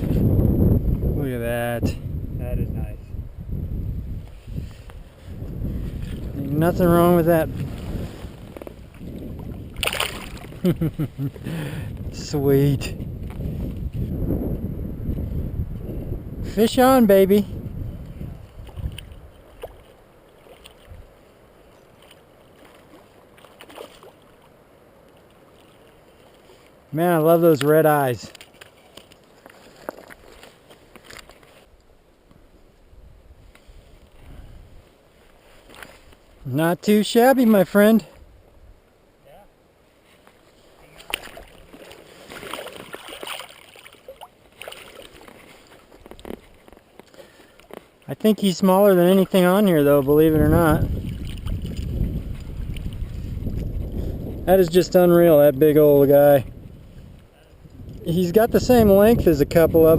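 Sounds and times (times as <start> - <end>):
faint river water: 0.0 - 59.9
small splashes and knocks: 7.6 - 10.8, 18.5 - 21.1, 21.9 - 26.8, 27.6 - 31.7, 40.2 - 48.1, 50.9 - 53.8.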